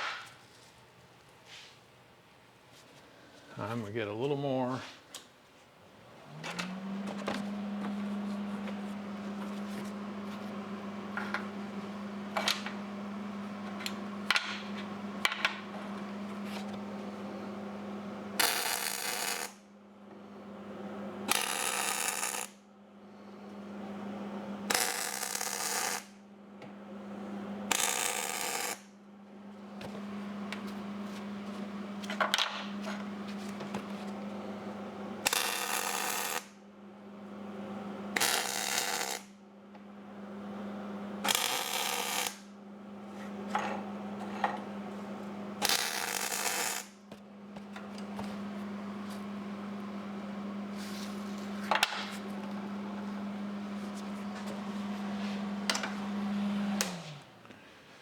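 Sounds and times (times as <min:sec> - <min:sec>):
electrical hum: 0:00.0 - 0:58.0
arc welding crackle: 0:18.4 - 0:19.6, 0:21.3 - 0:22.6, 0:24.7 - 0:26.1, 0:27.7 - 0:28.9, 0:35.2 - 0:36.5, 0:38.2 - 0:39.3, 0:41.2 - 0:42.5, 0:45.6 - 0:47.0.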